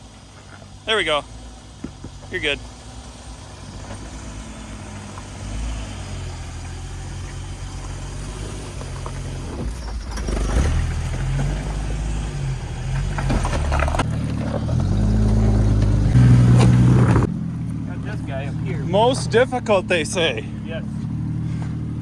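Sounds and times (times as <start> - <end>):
off-road vehicle engine revving: 0.0 - 22.0.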